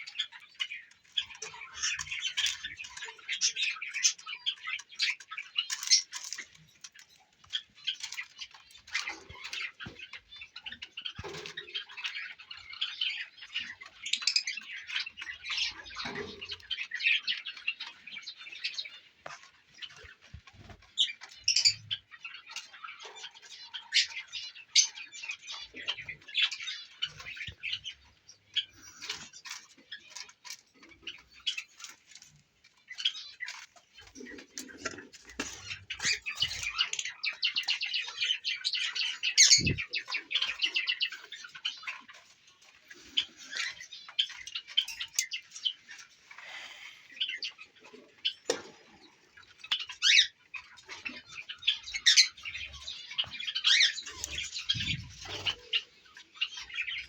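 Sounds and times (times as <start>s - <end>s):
birds chirping and chattering: 0.0s - 57.0s.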